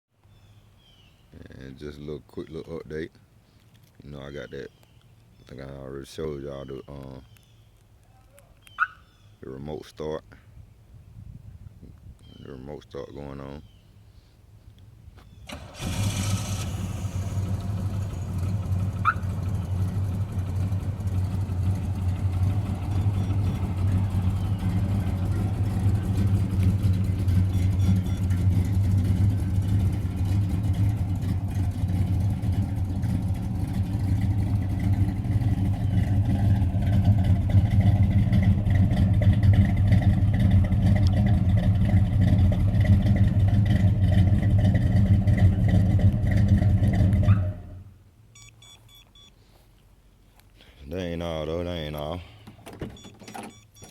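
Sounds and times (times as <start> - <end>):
car engine starting and idling: 15.3 - 48.5, 52.4 - 53.9.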